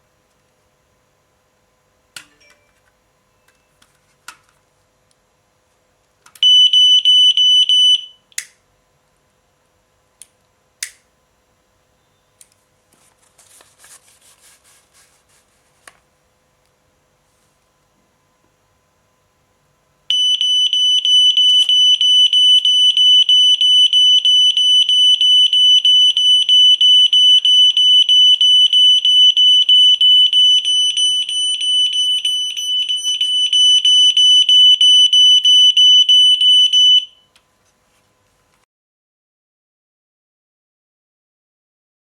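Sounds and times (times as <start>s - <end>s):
smoke detector beeping: 6.4s - 8.3s, 20.1s - 37.3s.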